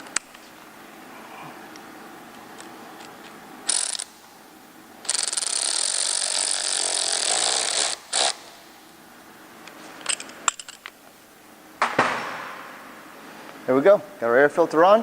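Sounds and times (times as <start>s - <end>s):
handheld power tool running: 5.0s - 8.5s.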